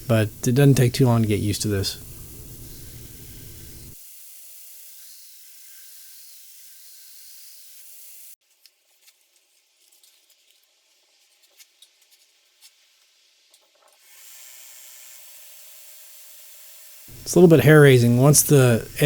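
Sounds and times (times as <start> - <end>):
belt grinder running: 2.0 - 8.3.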